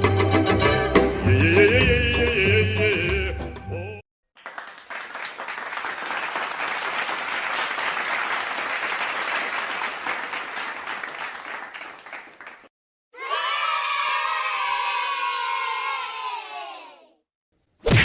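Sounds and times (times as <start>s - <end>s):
crowd clapping: 4.4s - 12.7s.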